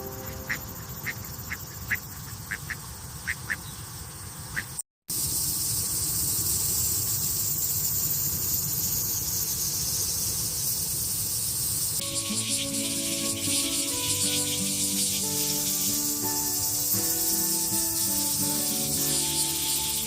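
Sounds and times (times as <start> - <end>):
short high chirping calls: 0.0 - 2.7, 12.0 - 20.0
steady hiss: 5.1 - 20.0.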